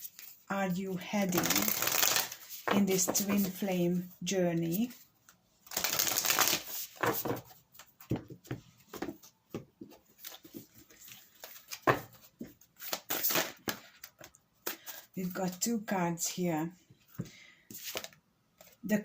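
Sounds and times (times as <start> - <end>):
cards being shuffled: 1.3 - 3.6, 5.7 - 8.2, 10.1 - 15.6, 17.7 - 18.8.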